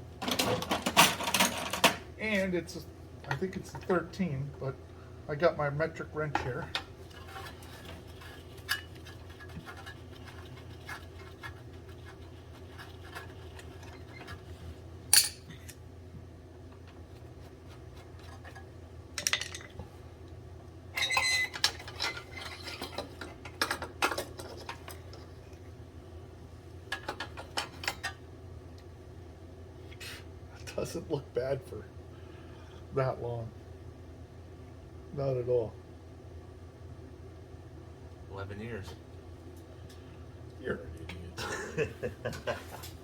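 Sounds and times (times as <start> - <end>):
steady low hum: 0.0 - 43.0
wrench clinking on metal fittings: 15.1 - 15.5.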